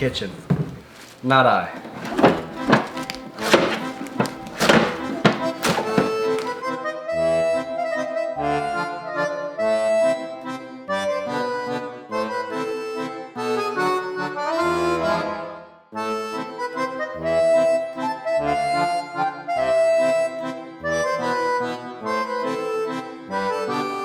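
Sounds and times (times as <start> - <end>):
accordion music: 6.3 - 24.0.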